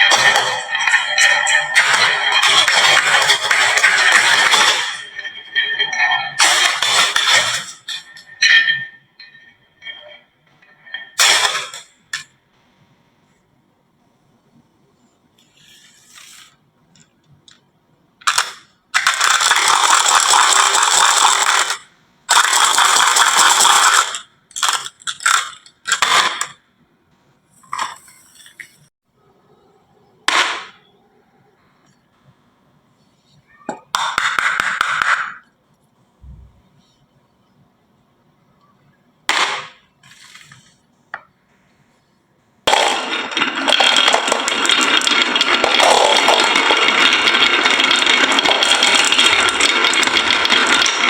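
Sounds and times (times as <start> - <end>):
marbles rolling down a marble run: 0.0 - 9.0, 18.2 - 26.6, 39.4 - 40.7, 42.7 - 51.0
marbles clicking on track pieces: 18.2 - 26.6, 42.7 - 51.0.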